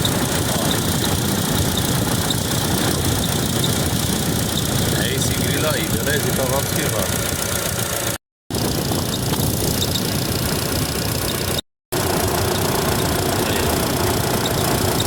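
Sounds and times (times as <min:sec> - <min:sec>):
radiator fan running: 0:00.0 - 0:07.4, 0:12.0 - 0:15.0
engine idling: 0:00.0 - 0:15.0.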